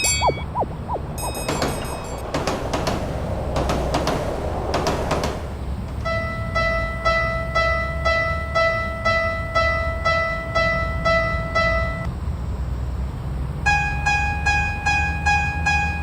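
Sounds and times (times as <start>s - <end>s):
steady low rumble: 0.0s - 6.3s.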